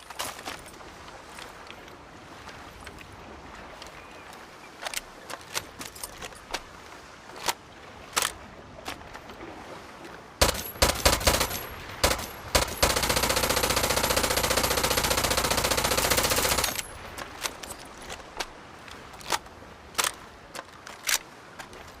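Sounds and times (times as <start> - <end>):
submachine gun firing bursts: 10.4 - 16.9.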